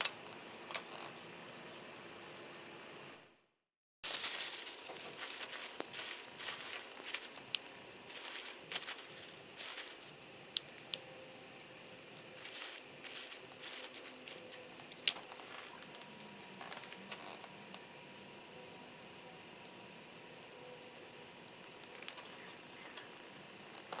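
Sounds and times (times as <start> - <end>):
wood fire crackling: 4.0 - 11.1, 12.1 - 17.8, 19.4 - 24.0
fire hissing: 4.1 - 11.0, 11.7 - 17.6.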